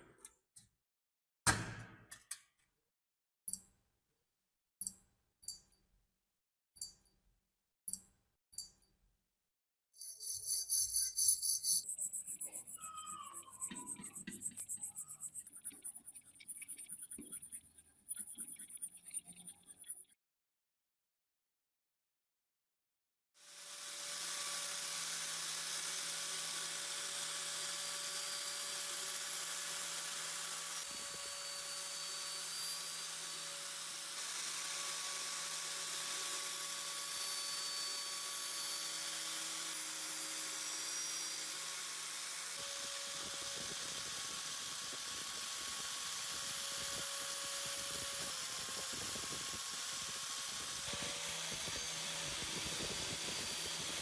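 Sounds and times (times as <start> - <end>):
electric power tool humming: 23.4 - 54.0.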